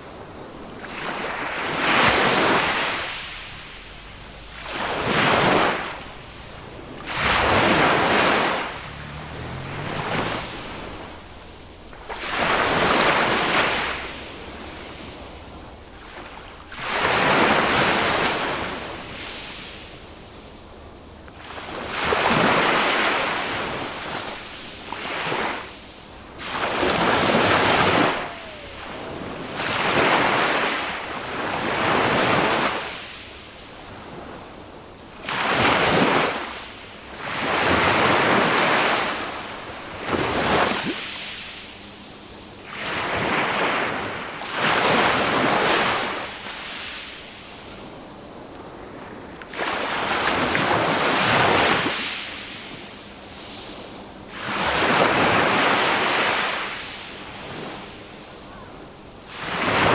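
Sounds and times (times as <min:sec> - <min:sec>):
small waves breaking on beach: 0:00.0 - 0:59.9.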